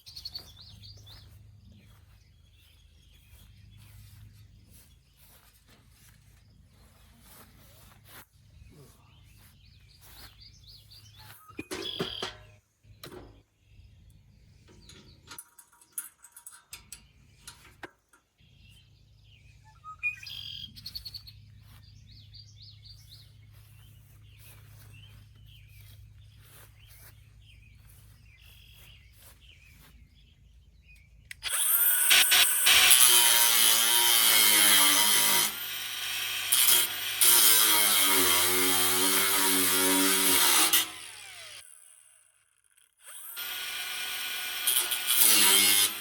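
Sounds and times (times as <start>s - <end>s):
faint bird chirps: 18.8s - 21.8s
power tool running: 31.4s - 46.0s.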